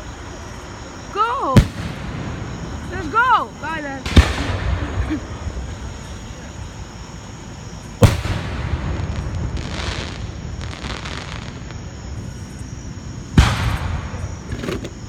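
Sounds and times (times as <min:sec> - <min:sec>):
firework crackling: 0:00.0 - 0:15.0
firework shells bursting: 0:08.0 - 0:15.0.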